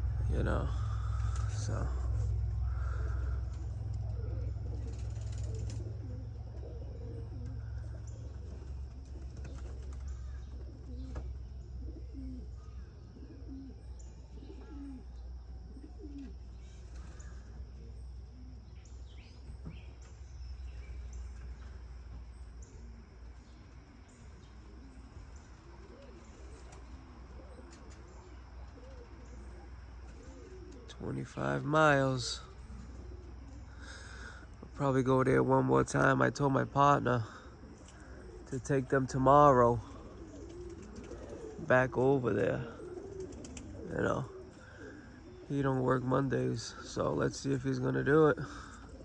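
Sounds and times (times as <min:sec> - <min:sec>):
low rumble: 0:00.0 - 0:09.1
pigeons cooing: 0:00.0 - 0:49.0
small birds chirping: 0:00.0 - 0:49.0.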